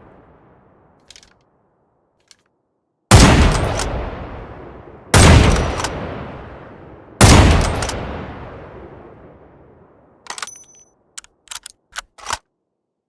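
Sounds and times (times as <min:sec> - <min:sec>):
rifle shots: 0:03.1 - 0:04.2, 0:05.2 - 0:06.1, 0:07.2 - 0:08.2.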